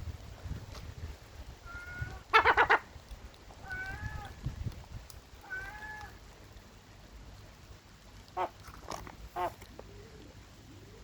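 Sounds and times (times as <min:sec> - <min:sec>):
seagull calling: 0:09.3 - 0:09.6.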